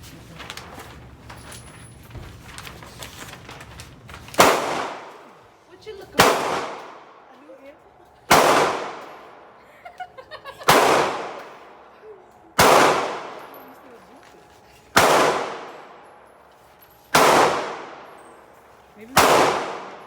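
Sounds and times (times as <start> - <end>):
gunshots echoing: 4.4 - 5.5, 6.2 - 7.3, 8.3 - 9.6, 10.6 - 11.9, 12.6 - 13.7, 14.9 - 16.2, 17.1 - 20.0.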